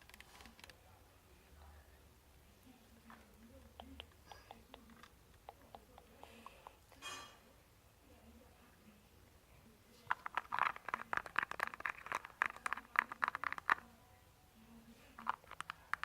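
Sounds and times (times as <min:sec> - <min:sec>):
sharp taps and scratches: 0:10.1 - 0:13.9, 0:15.2 - 0:16.0.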